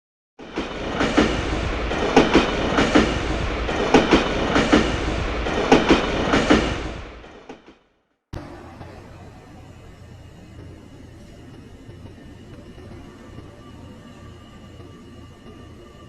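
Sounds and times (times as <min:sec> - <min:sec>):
train wheels clacking on rails: 0:00.4 - 0:07.8.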